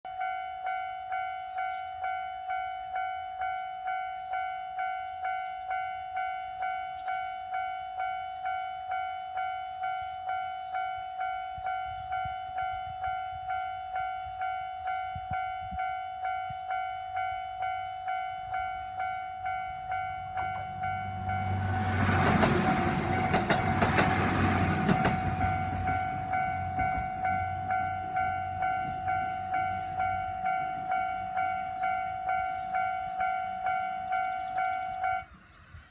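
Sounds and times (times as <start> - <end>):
level-crossing alarm ringing: 0.1 - 35.4
diesel train rumble and wheel clicks: 1.0 - 35.7.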